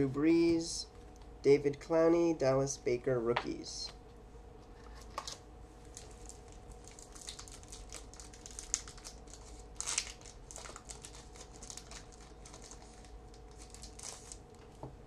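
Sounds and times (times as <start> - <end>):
faint steady hum: 0.0 - 15.0
plastic wrapper crinkling: 4.8 - 14.7.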